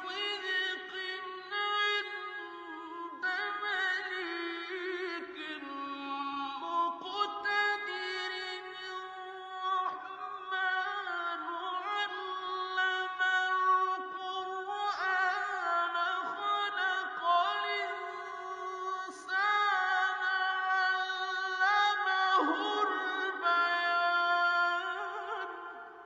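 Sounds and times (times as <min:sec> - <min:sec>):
person singing long sliding notes: 0:22.2 - 0:25.8.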